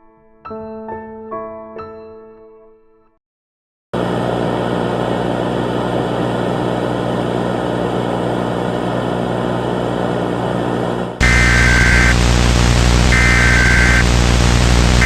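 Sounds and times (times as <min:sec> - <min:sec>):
steady drone of hum and hiss: 0:10.5 - 0:15.0.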